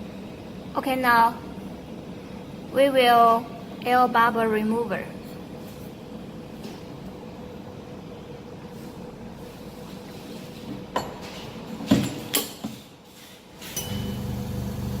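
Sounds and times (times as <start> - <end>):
machine humming: 13.8 - 15.0.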